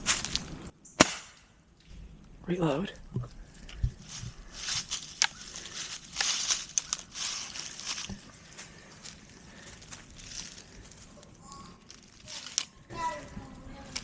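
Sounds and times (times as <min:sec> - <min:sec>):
rustling and crunching in dry leaves: 0:04.0 - 0:14.0.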